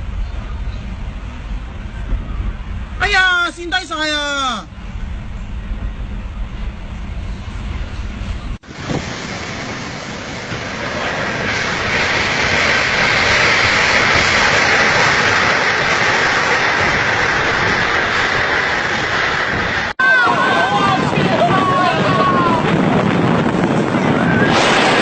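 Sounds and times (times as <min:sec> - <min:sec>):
rushing wind: 0:00.0 - 0:25.0
heavy rain: 0:08.6 - 0:25.0.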